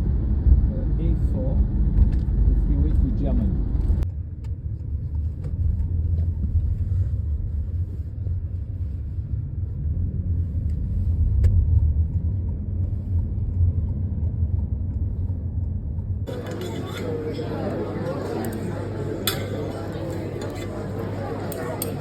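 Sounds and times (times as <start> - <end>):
vehicle rumble in motion: 0.0 - 16.5.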